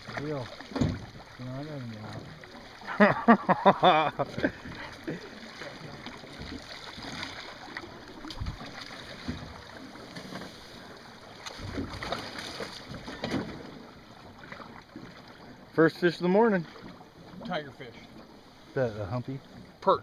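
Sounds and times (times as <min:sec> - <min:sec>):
water wash: 0:00.0 - 0:18.0
wind noise on microphone: 0:08.3 - 0:08.7.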